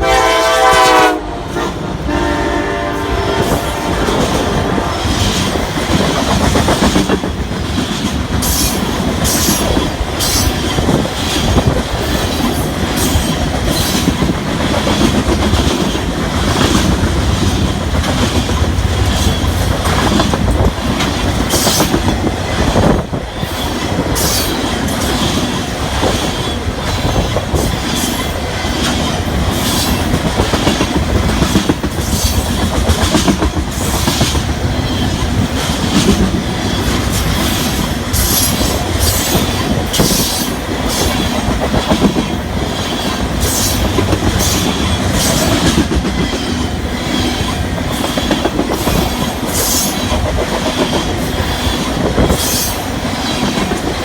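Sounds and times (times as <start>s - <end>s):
train rumble: 0.0s - 54.0s
train wheels clacking over joints: 3.4s - 54.0s.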